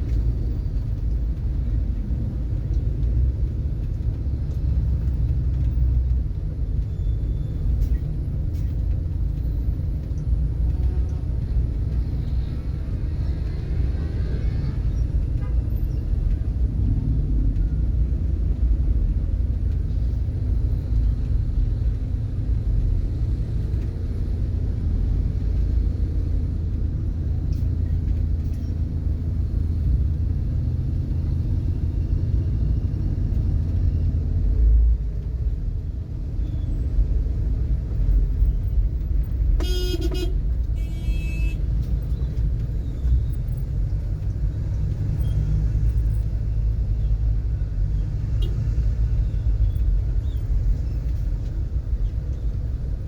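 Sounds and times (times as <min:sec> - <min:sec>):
low rumble of road traffic: 0:00.0 - 0:53.0
car horn honking: 0:39.6 - 0:41.6.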